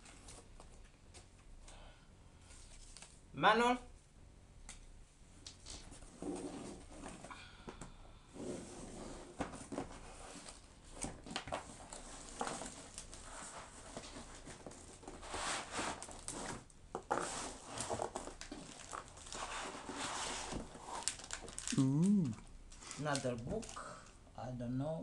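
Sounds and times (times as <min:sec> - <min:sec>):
paper rustling and crinkling: 0:02.4 - 0:03.2, 0:08.9 - 0:23.8.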